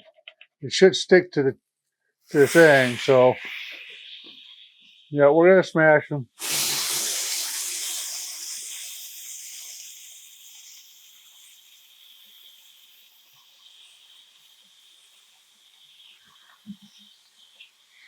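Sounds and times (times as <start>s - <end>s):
patties sizzling on a griddle: 2.3s - 5.1s, 6.4s - 18.0s.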